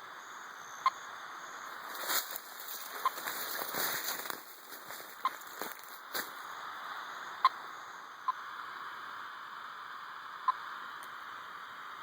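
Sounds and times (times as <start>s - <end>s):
radio receiver static hiss: 0.0s - 12.0s.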